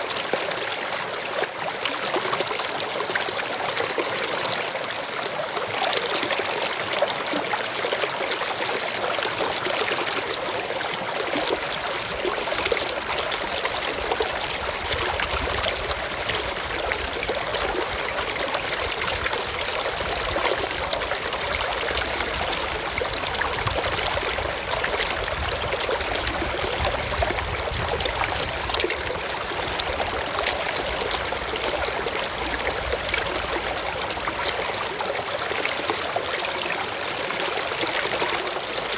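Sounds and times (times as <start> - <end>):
stream water flowing: 0.0 - 38.9.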